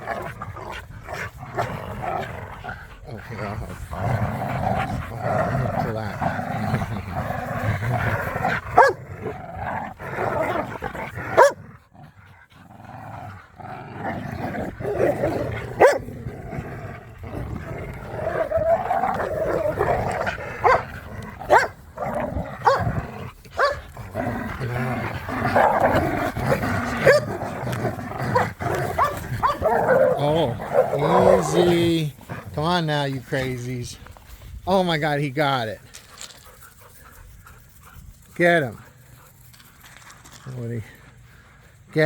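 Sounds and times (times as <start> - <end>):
dogs growling and snarling: 0.0 - 42.0
dog barking: 8.8 - 9.0, 11.4 - 11.6, 20.6 - 20.8, 21.5 - 21.7, 23.6 - 23.8, 27.0 - 27.3, 29.0 - 29.7.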